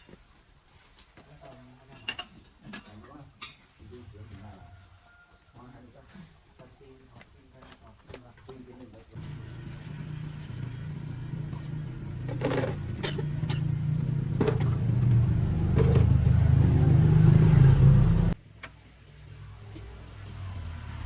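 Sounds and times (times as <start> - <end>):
engine rumbling: 8.2 - 21.0.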